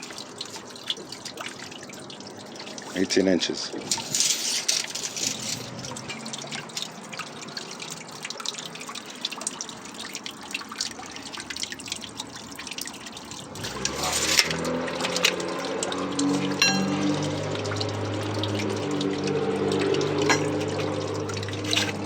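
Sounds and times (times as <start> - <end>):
water trickling and dripping: 0.0 - 22.0
low motor hum: 16.0 - 22.0.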